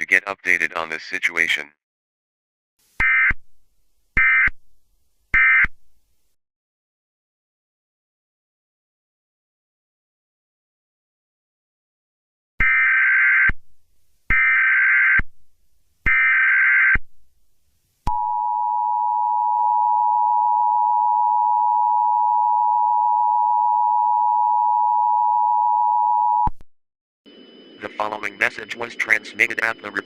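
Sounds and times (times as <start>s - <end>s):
buzzy digital data tone: 27.3s - 30.0s
two-tone attention signal: 27.8s - 30.0s.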